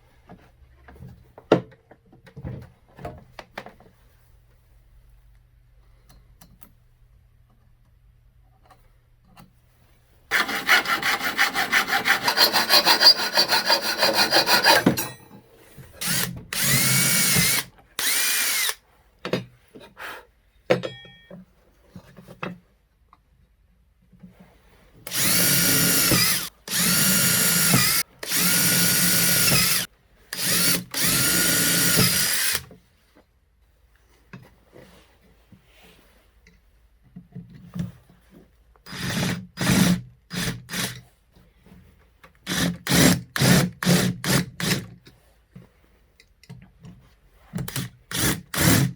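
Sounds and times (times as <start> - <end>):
power drill on wood: 10.3 - 15.0, 16.0 - 18.8, 25.1 - 32.7, 38.9 - 41.0, 42.4 - 44.9, 47.6 - 48.9.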